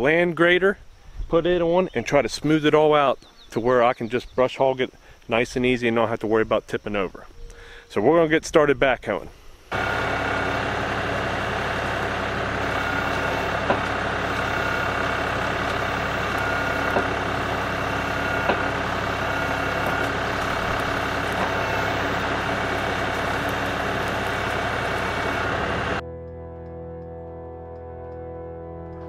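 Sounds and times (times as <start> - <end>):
diesel tractor engine running: 9.7 - 26.0.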